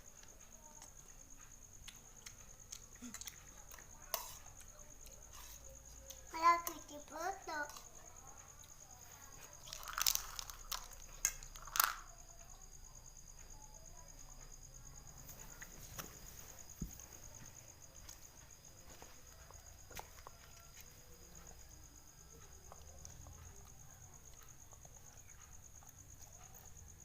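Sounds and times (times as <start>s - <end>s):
crunchy snack being chewed: 1.8s - 5.5s, 9.6s - 12.1s.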